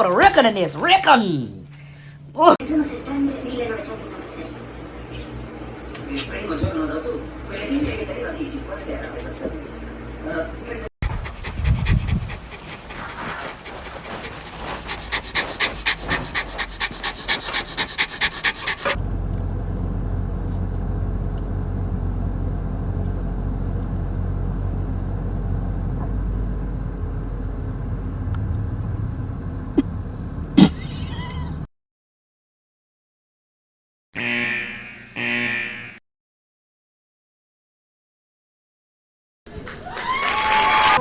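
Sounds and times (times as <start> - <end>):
steady low hum: 0.0 - 31.7
dog panting: 9.0 - 19.0.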